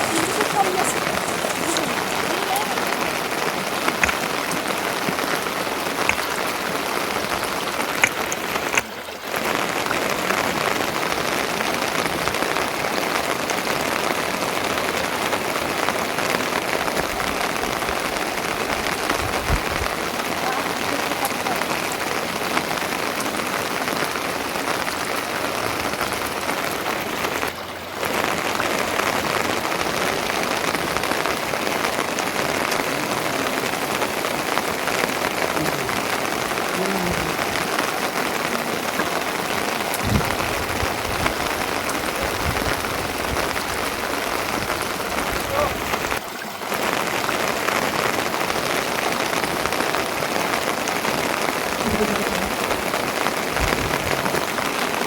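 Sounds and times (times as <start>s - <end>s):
steady rain falling: 0.0s - 55.0s
sharp drip ticks: 3.9s - 4.6s.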